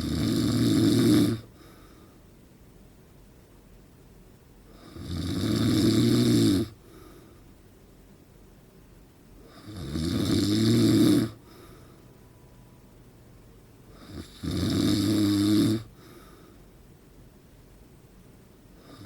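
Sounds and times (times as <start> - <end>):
man snoring loudly: 0.0 - 1.5, 4.8 - 6.8, 9.5 - 11.4, 13.9 - 16.0.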